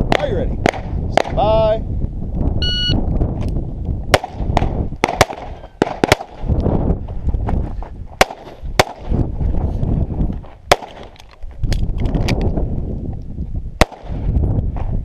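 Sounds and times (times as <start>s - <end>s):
pistol shots: 4.1s - 6.4s, 8.2s - 9.1s, 10.7s - 11.2s, 13.8s - 14.2s.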